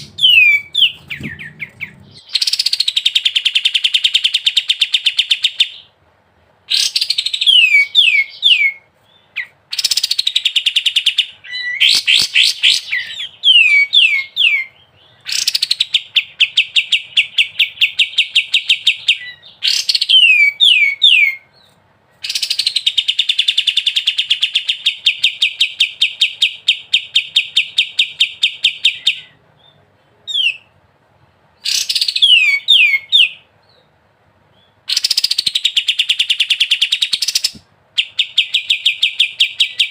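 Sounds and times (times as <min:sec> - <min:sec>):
songbird trills and whistles: 0:00.0 - 0:05.8.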